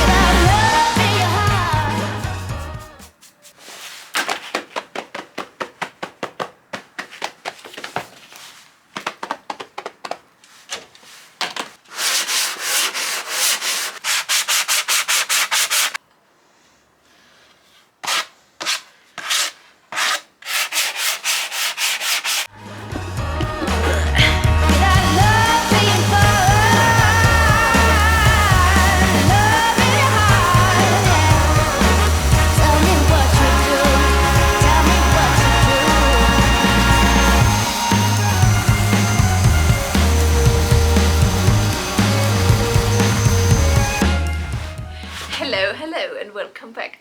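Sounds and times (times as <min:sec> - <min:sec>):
sandpaper scrubbing wood: 0:11.9 - 0:16.0, 0:18.0 - 0:22.5, 0:24.8 - 0:45.5.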